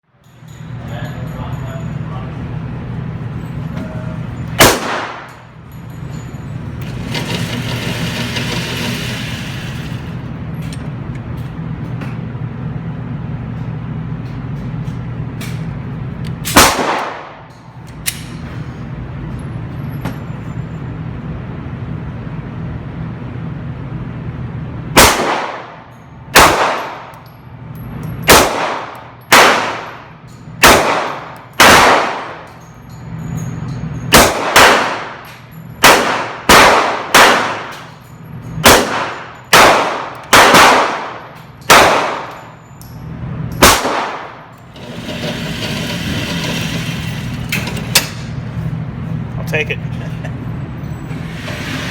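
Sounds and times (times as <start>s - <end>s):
handgun shots: 4.6s - 5.4s, 16.4s - 17.4s, 25.0s - 25.8s, 26.4s - 27.2s, 28.3s - 30.0s, 30.6s - 32.5s, 34.1s - 37.9s, 38.6s - 42.5s, 43.6s - 44.4s.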